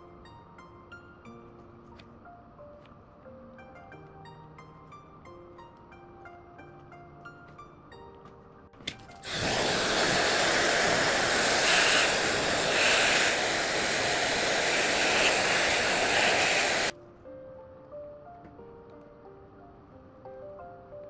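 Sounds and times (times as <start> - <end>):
loud hiss of rushing air: 9.2 - 16.9.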